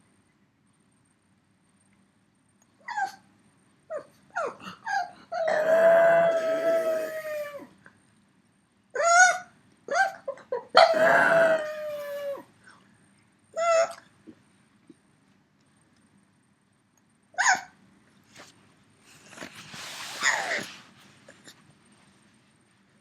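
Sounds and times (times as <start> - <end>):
dog howling and whining: 2.8 - 3.2, 3.9 - 7.8, 9.0 - 12.5.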